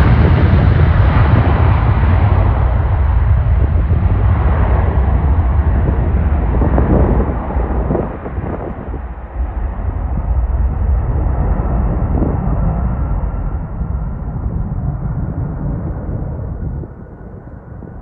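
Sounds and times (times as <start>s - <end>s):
jet airliner engines rumbling: 0.0s - 18.0s.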